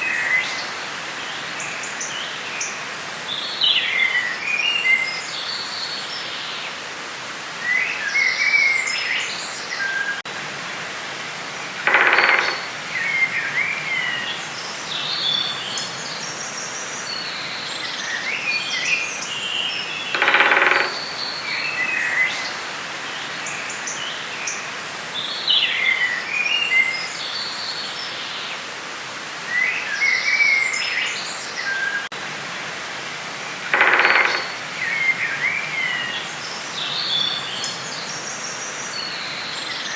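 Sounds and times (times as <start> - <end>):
songbirds twittering: 0.0 - 6.8, 11.5 - 28.7, 33.4 - 39.9
steady background hiss: 0.0 - 39.9
low harsh bird call: 11.8 - 14.2, 33.7 - 35.6.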